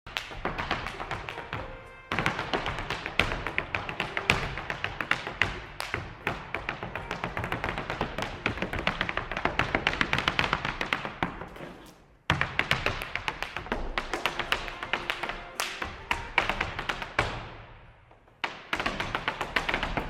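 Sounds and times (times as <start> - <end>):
hard shoes tapping on floor: 0.1 - 20.0.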